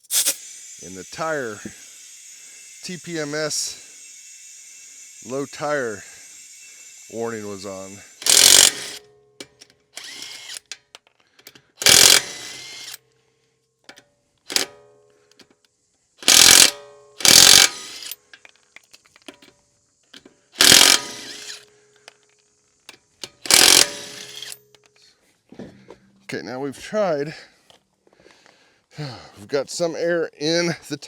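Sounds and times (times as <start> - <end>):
compressed air hissing into tire: 0.0 - 8.8.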